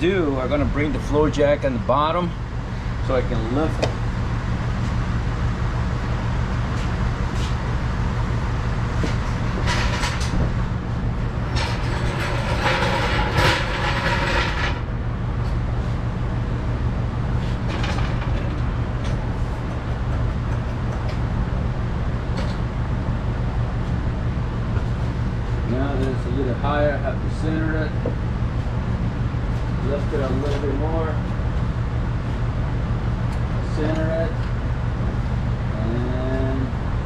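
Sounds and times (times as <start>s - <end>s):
steady low hum: 0.0s - 37.0s
metal clattering and rattling: 9.1s - 15.0s, 17.6s - 21.2s.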